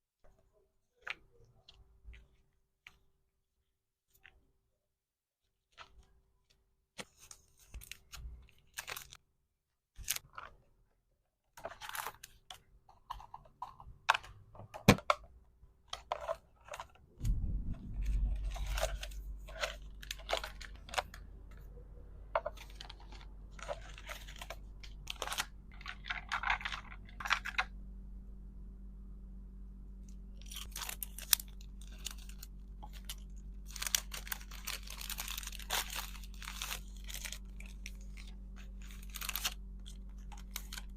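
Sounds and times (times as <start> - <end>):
low steady hum: 11.6 - 40.9
plastic wrap crinkling: 17.8 - 21.8, 22.4 - 27.6, 30.4 - 40.9.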